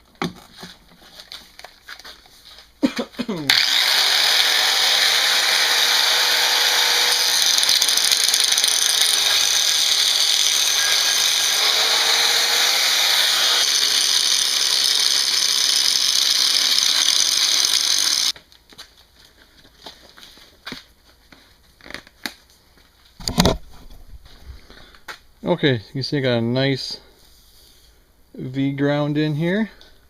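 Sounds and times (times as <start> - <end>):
power grinder grinding metal: 3.5 - 18.4.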